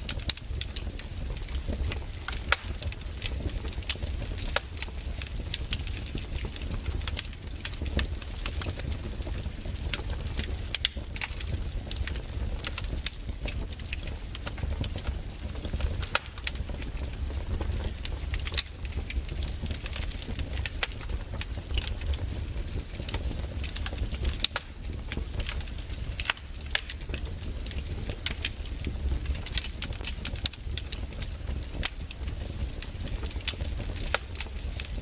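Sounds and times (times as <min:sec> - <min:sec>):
logs crackling and popping: 0:00.0 - 0:35.0
low rumble of flames: 0:00.0 - 0:35.0.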